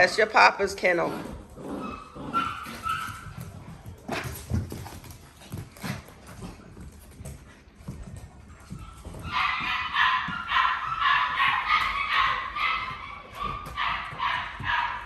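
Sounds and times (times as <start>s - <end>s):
puppies yipping and whining: 1.6s - 3.8s, 8.6s - 15.0s.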